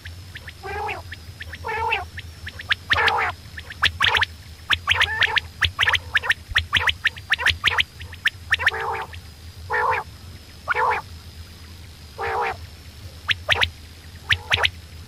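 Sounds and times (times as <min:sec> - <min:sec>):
quail calling: 0:00.4 - 0:10.1, 0:10.7 - 0:11.1, 0:12.2 - 0:12.6, 0:13.3 - 0:14.7.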